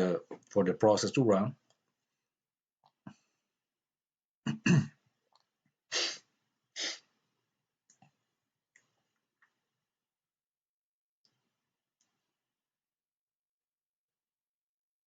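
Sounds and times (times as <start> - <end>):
person coughing: 4.5 - 5.0.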